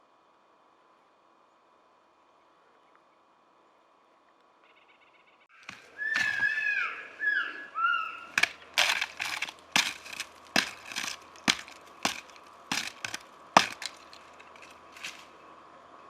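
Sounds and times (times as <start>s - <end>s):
high sliding elk call: 5.8s - 8.4s
sharp wooden cracks and snaps: 8.3s - 15.3s.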